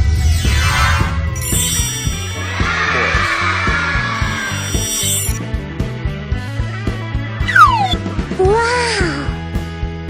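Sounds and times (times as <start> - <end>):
upbeat background music: 0.5 - 10.0
high tone sliding downward: 4.1 - 5.4, 7.4 - 8.1.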